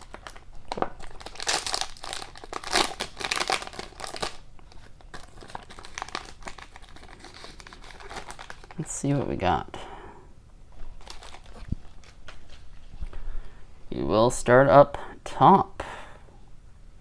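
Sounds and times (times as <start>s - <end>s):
wrapper tearing and crinkling: 0.0s - 8.8s, 10.7s - 13.1s.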